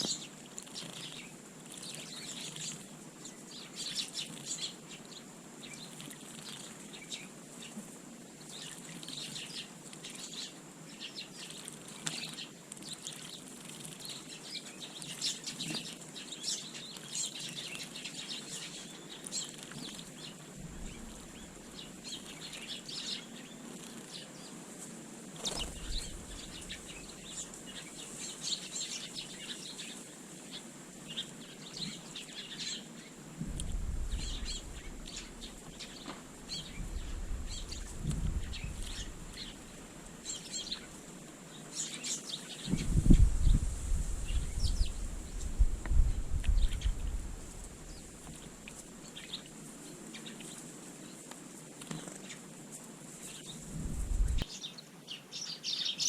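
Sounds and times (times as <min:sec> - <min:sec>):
small birds chirping: 0:00.0 - 0:56.0
wing flutters: 0:24.8 - 0:29.3.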